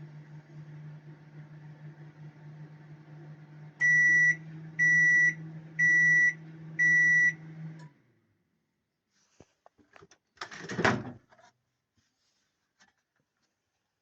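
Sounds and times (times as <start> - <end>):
microwave oven humming: 0.0 - 8.6
high microwave beeps: 3.8 - 7.6.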